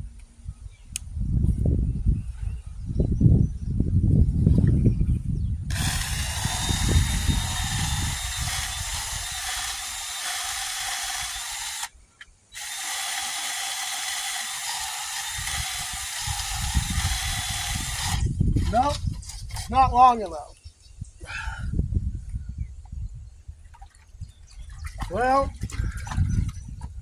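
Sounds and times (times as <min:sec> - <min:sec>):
electric drill whining: 0:05.7 - 0:12.0, 0:12.6 - 0:18.3.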